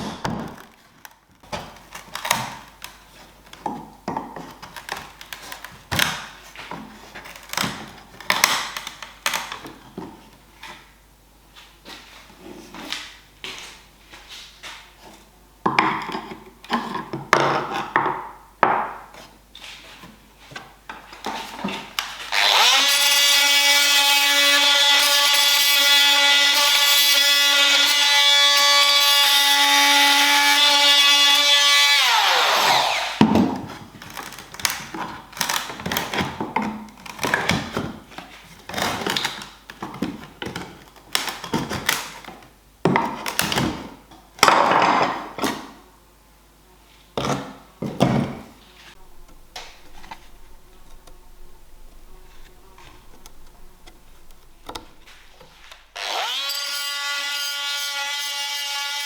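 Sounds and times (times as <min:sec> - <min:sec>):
wood and tools knocking: 0:00.0 - 0:00.7, 0:03.6 - 0:08.7, 0:49.0 - 0:56.1
electric power tool running: 0:22.3 - 0:27.7, 0:29.7 - 0:33.4, 0:49.0 - 0:57.6.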